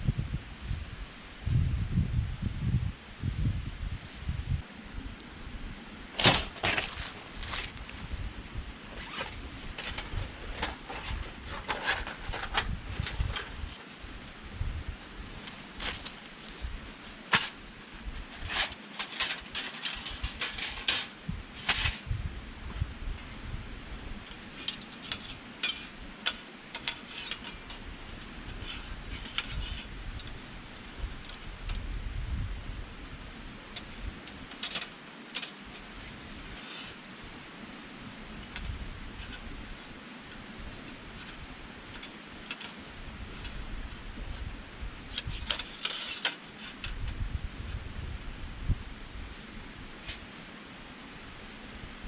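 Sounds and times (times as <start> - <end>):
wind on microphone: 0.0 - 18.8, 19.6 - 26.2, 27.0 - 34.5, 35.7 - 45.9, 46.6 - 50.4
fire popping and snapping: 6.1 - 8.2
wood fire crackling: 6.1 - 10.0.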